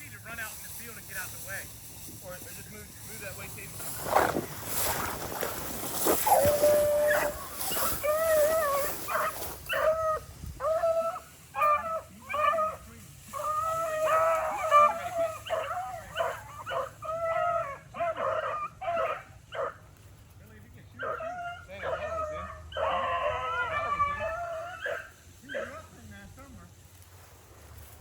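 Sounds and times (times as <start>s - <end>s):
hounds baying and barking: 4.0s - 20.1s, 20.9s - 26.1s.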